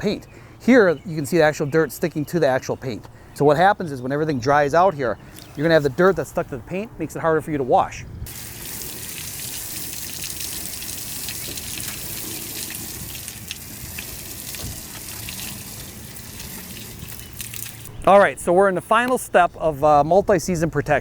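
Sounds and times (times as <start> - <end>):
water spraying onto hull: 8.3 - 17.9.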